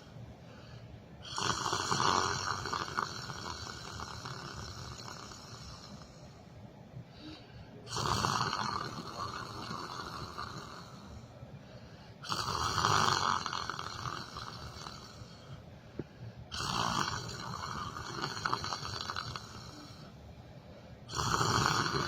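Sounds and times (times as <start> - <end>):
person snoring: 1.2 - 6.3, 7.2 - 11.3, 12.2 - 15.5, 16.5 - 20.2, 21.1 - 22.0.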